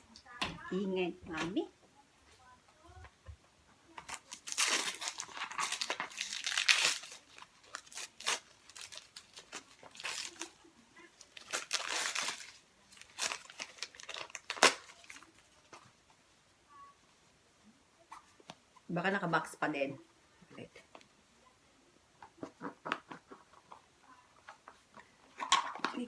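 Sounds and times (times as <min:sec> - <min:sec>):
packaging tearing and crinkling: 0:04.0 - 0:15.4.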